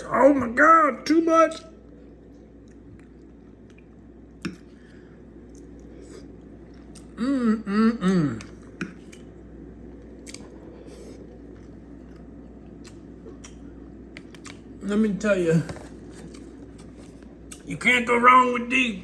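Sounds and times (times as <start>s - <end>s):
man chewing food: 1.8s - 17.7s
man humming mmm: 7.1s - 8.6s.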